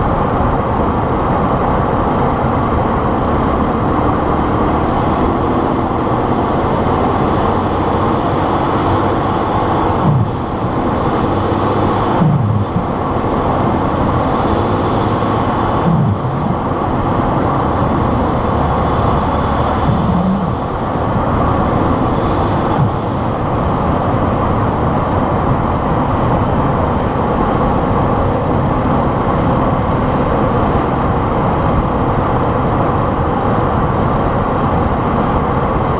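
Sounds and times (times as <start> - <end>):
truck engine running: 1.2 - 25.0
low belching blow-off noise: 7.1 - 24.0.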